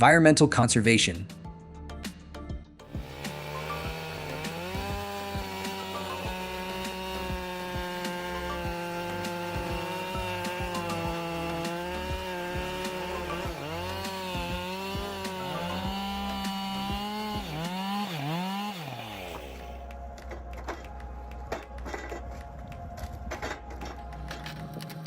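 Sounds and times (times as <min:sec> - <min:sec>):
chainsaw running: 0:02.8 - 0:20.0.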